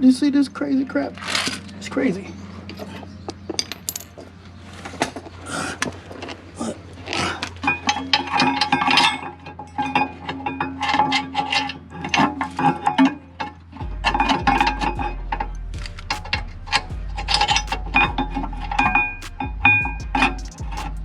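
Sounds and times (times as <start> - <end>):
tools and metal parts clicking: 2.7 - 4.3, 7.7 - 13.7.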